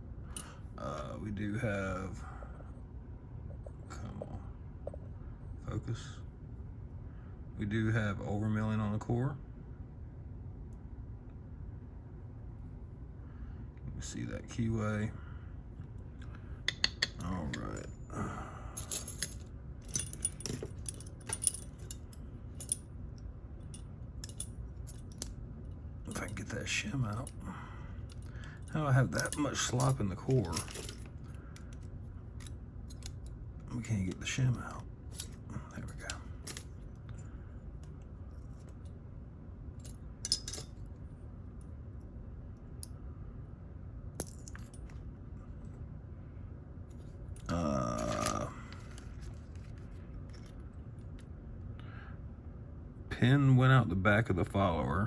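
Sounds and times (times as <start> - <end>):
steady low hum: 0.0 - 55.0
metallic lock parts clicking: 18.8 - 22.8, 23.6 - 25.4, 28.0 - 33.4, 39.8 - 40.9.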